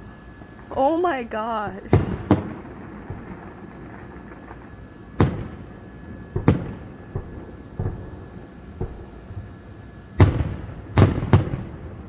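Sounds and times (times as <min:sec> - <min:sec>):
fireworks bursting: 0:00.8 - 0:04.6.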